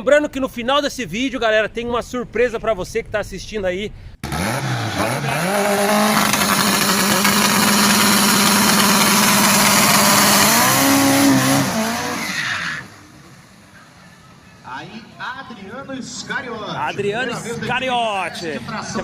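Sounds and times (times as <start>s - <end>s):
car engine revving: 4.2s - 14.4s
tyres squealing: 10.2s - 13.2s.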